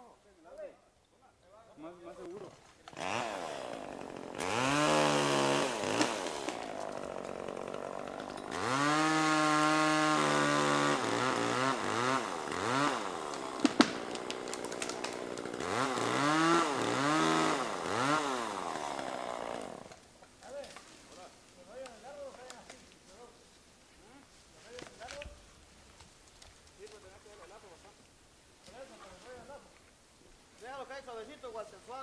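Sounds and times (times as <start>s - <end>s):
chainsaw revving: 2.9s - 20.0s.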